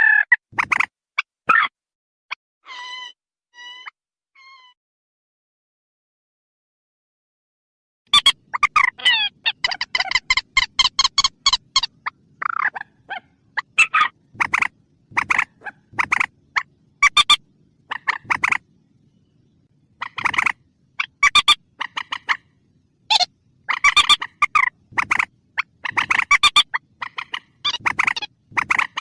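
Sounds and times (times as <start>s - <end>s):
rail bird calling: 8.1s - 29.0s.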